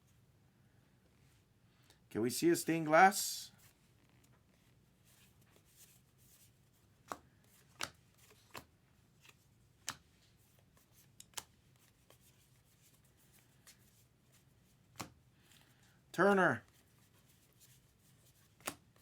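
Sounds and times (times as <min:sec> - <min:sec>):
cards flipping and sliding: 0:03.6 - 0:15.6, 0:16.7 - 0:19.0
card snaps and flicks: 0:07.8 - 0:10.0, 0:11.2 - 0:11.5, 0:18.6 - 0:18.8.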